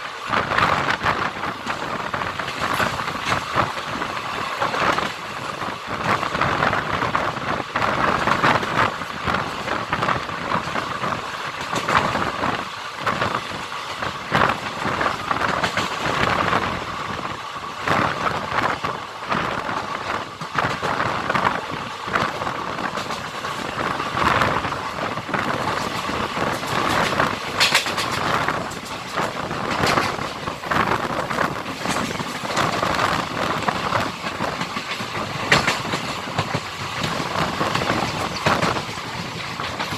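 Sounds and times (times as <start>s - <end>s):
train wheels clattering on rails: 0.0s - 39.9s
wind rushing: 0.3s - 39.9s.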